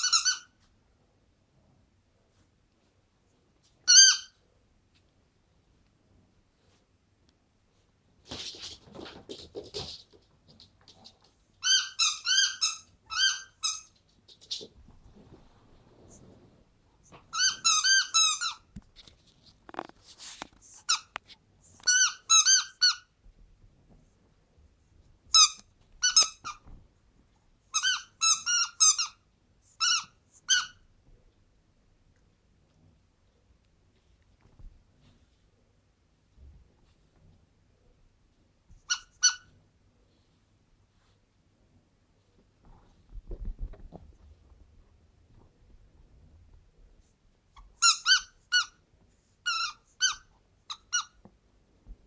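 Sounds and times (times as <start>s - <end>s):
toy squeaker squeaks: 0.0s - 0.5s, 3.9s - 4.3s, 11.6s - 13.9s, 17.3s - 18.6s, 21.9s - 23.0s, 25.3s - 26.6s, 27.8s - 29.2s, 29.8s - 30.8s, 38.9s - 39.4s, 47.8s - 48.8s, 49.5s - 51.2s.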